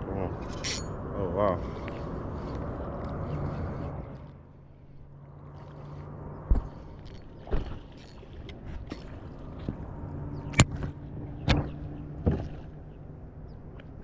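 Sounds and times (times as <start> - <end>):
boat motor humming: 0.0 - 14.0
knocks and thumps in boat: 6.4 - 12.9.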